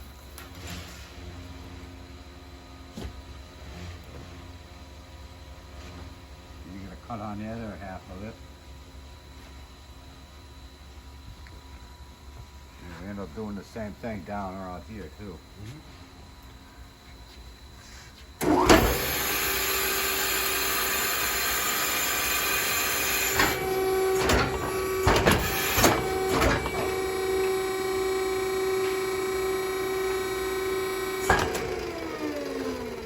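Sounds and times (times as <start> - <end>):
electric cutting tool whine: 18.4 - 33.0.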